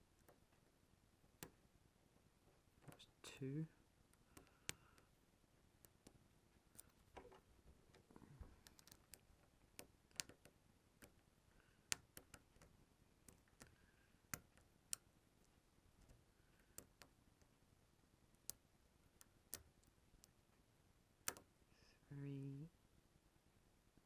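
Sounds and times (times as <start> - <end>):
lock pick clicking in padlock: 8.6 - 9.2.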